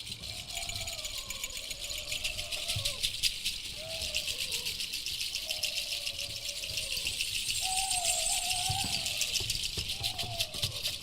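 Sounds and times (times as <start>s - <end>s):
high rattling chirr: 0.0s - 10.0s
wavering whistled tones: 3.6s - 10.6s.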